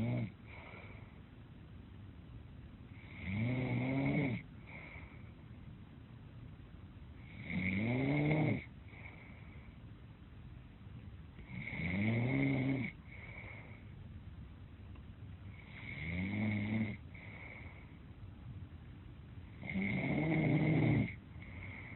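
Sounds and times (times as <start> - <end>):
person snoring: 3.0 - 4.9, 7.3 - 8.7, 11.5 - 13.6, 19.6 - 21.9.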